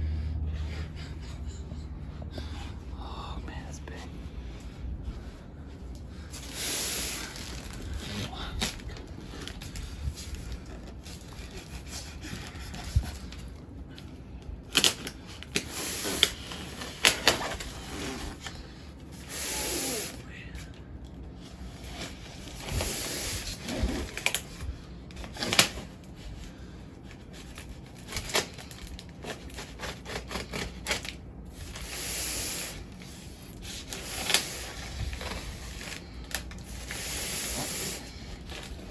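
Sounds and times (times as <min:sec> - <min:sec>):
packing material rustling: 0:06.2 - 0:13.5, 0:27.4 - 0:38.9.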